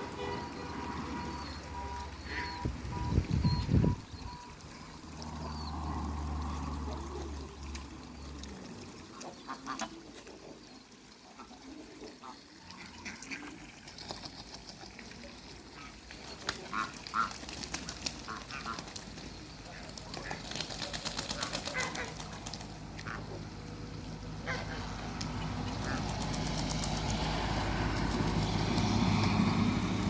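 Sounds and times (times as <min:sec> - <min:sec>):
ducks splashing in water: 0:00.0 - 0:30.0
duck calls: 0:16.6 - 0:17.4, 0:18.2 - 0:18.9, 0:21.3 - 0:22.4, 0:23.0 - 0:23.4, 0:24.4 - 0:24.9.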